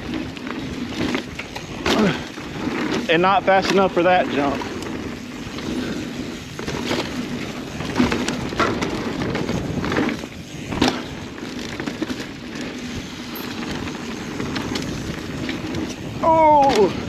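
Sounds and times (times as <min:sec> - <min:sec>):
bike chain and frame clattering: 0:00.0 - 0:17.0
tyre and wind rumble: 0:00.0 - 0:17.0.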